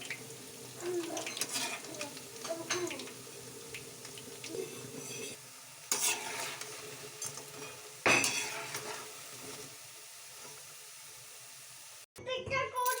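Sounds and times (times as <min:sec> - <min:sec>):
food sizzling in a frying pan: 0:00.0 - 0:12.1
utensil scraping a pan: 0:01.0 - 0:03.1, 0:04.1 - 0:09.8.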